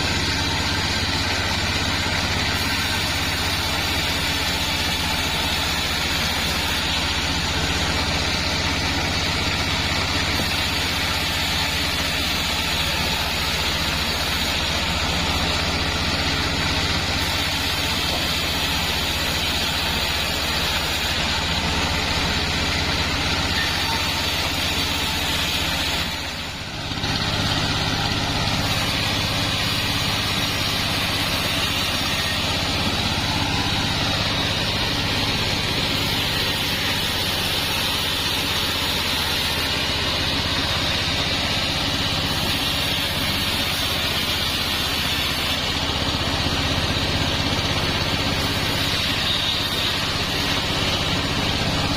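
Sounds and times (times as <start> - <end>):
sawmill machinery drone: 0.0 - 51.9
hiss: 42.1 - 45.8.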